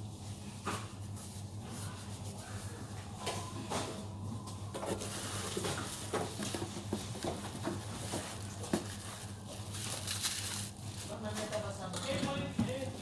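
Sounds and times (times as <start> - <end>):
low electrical hum: 0.0 - 13.0
objects being handled: 4.8 - 13.0.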